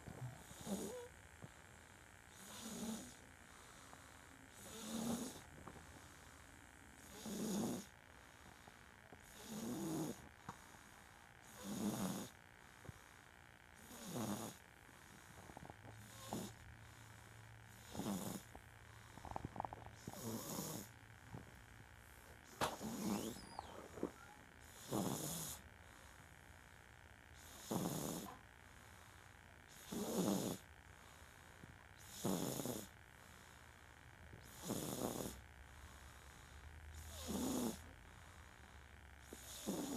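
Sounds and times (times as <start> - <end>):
loud rasping snoring: 0.0 - 1.2, 2.3 - 3.9, 4.5 - 5.5, 7.0 - 8.0, 9.2 - 10.6, 11.4 - 12.4, 13.8 - 14.7, 15.3 - 21.0, 22.4 - 25.7, 27.4 - 28.4, 29.7 - 30.7, 32.0 - 33.0, 34.4 - 35.5, 36.9 - 37.9, 39.2 - 39.9.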